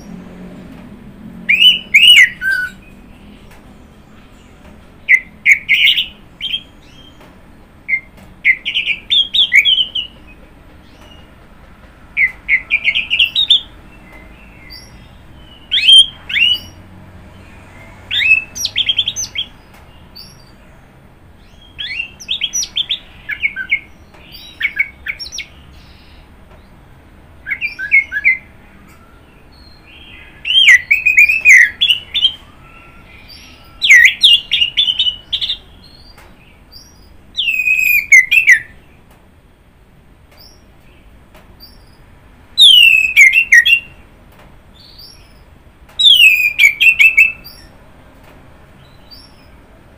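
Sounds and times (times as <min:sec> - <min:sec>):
thrush singing whistled notes: 0:01.5 - 0:03.0, 0:05.0 - 0:07.2, 0:07.9 - 0:10.2, 0:12.2 - 0:16.8, 0:18.1 - 0:19.6, 0:27.4 - 0:38.8, 0:42.6 - 0:44.0, 0:46.0 - 0:47.7.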